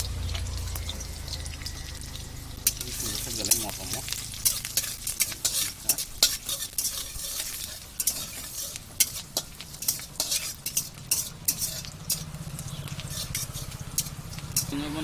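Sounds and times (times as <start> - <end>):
seeds sizzling in hot oil: 0.0 - 15.0.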